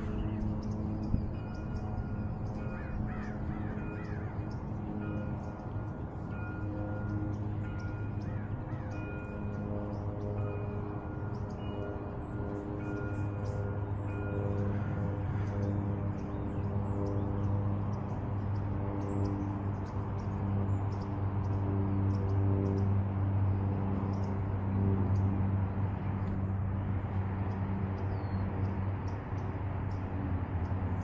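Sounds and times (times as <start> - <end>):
steady low hum: 0.0 - 31.0
small birds chirping: 12.6 - 24.4.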